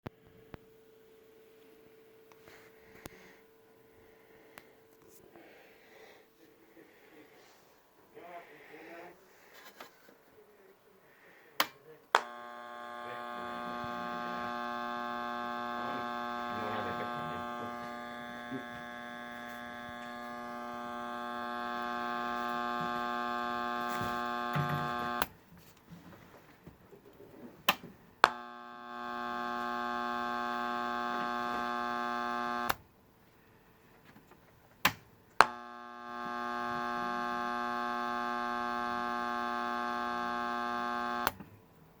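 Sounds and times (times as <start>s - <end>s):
switch clicks: 11.6s - 12.5s
small electric motor humming: 12.2s - 25.4s, 28.2s - 32.8s, 35.4s - 41.4s.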